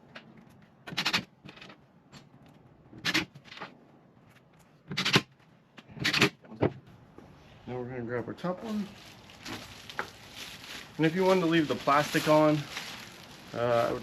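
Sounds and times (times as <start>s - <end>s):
rustling clatters of handling: 8.5s - 14.0s.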